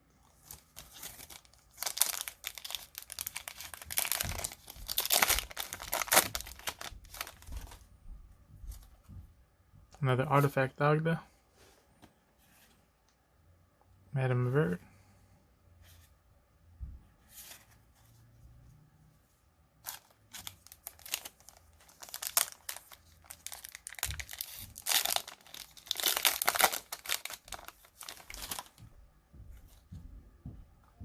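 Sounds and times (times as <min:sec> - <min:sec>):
wrapper tearing and crinkling: 0:00.6 - 0:07.5, 0:19.8 - 0:28.7.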